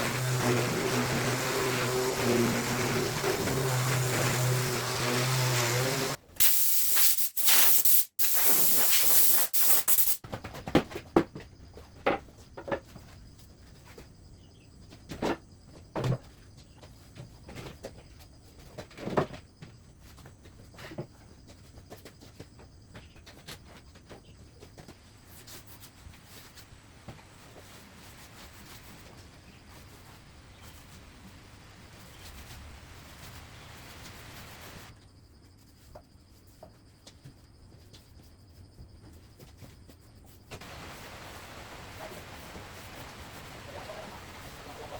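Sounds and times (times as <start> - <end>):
motor humming: 0.0 - 6.2
bursts of hissing spray: 0.0 - 10.2, 40.6 - 44.9.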